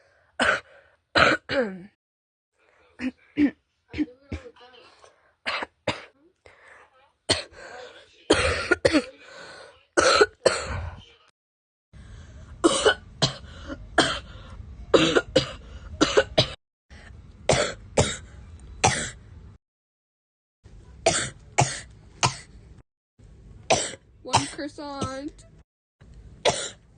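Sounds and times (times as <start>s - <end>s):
girl coughing: 0.4s - 2.0s, 3.0s - 4.6s, 5.5s - 6.2s, 7.3s - 9.2s, 10.0s - 10.9s, 12.6s - 13.4s, 14.0s - 14.3s, 15.0s - 16.6s, 17.5s - 19.2s, 21.0s - 22.5s, 23.7s - 25.3s, 26.4s - 26.8s.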